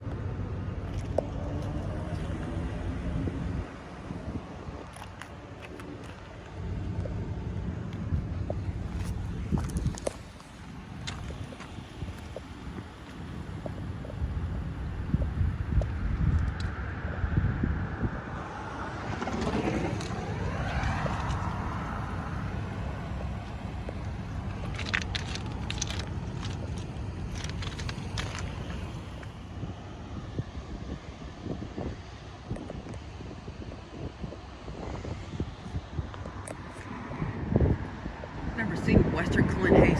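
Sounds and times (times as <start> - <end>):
heavy vehicle engine rumbling: 0.0 - 30.6
wind on microphone: 0.0 - 39.9.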